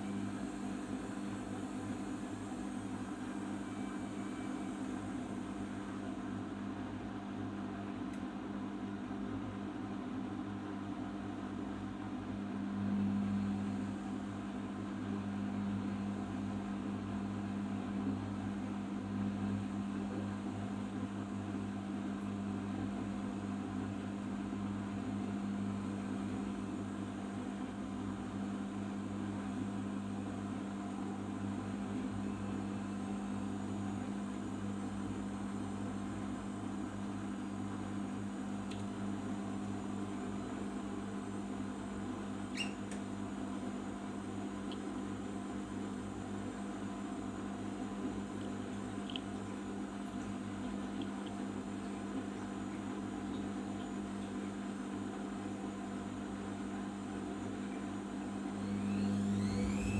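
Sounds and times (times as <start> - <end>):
washing machine spinning: 0.0 - 6.9, 56.9 - 59.9.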